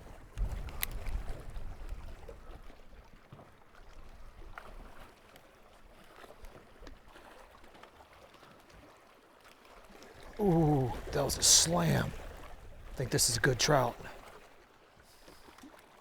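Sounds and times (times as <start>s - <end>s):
wind rumble on microphone: 0.0s - 2.7s.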